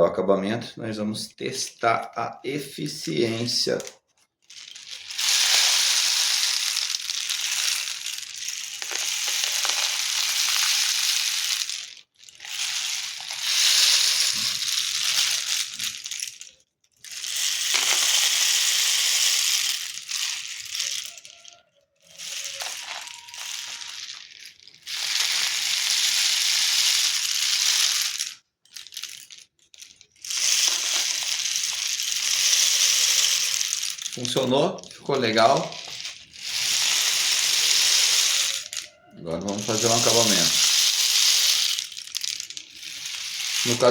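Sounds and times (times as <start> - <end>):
rainstick rushing patter: 4.5 - 16.3, 19.1 - 24.4, 30.2 - 43.9.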